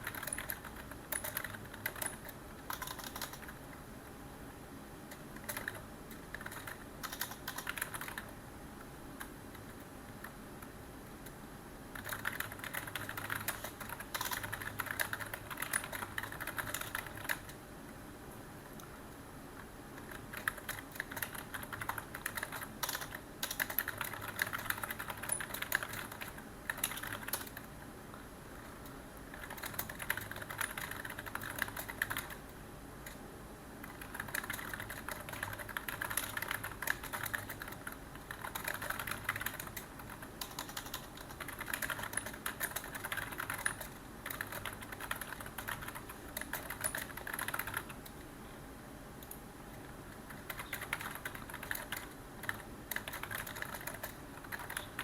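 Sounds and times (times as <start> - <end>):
typing on computer keyboard: 0.0 - 3.6, 5.1 - 8.3, 11.9 - 17.6, 20.0 - 27.7, 28.6 - 33.2, 33.8 - 48.2, 50.2 - 55.0.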